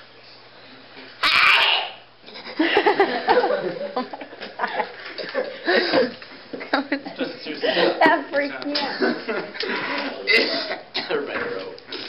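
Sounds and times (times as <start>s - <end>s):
loud human sneeze: 1.2s - 2.1s, 10.3s - 11.1s.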